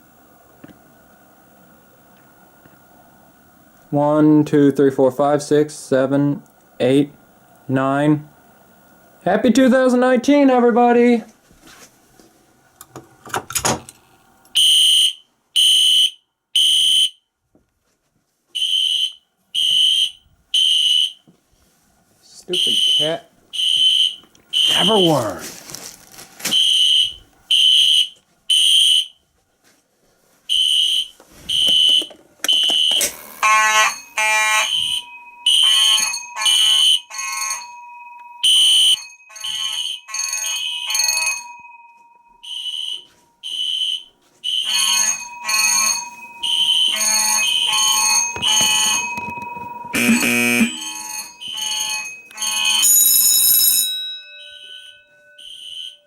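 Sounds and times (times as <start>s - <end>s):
fire alarm horns beeping: 14.5s - 17.3s, 18.6s - 21.3s, 22.4s - 25.5s, 26.5s - 29.2s, 30.5s - 37.7s, 38.4s - 56.0s
steady lower alarm tone: 14.6s - 17.2s, 18.6s - 21.2s, 22.5s - 25.4s, 26.5s - 29.2s, 30.5s - 56.0s.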